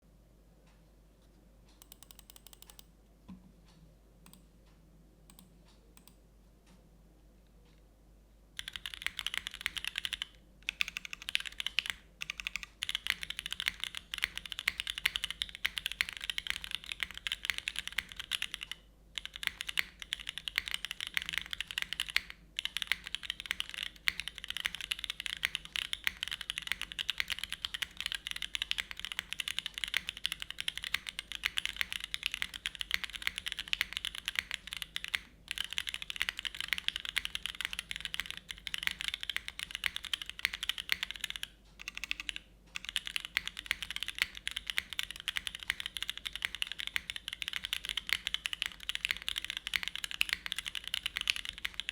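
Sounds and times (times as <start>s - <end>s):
typing on mechanical keyboard: 1.8s - 2.8s, 8.6s - 51.9s.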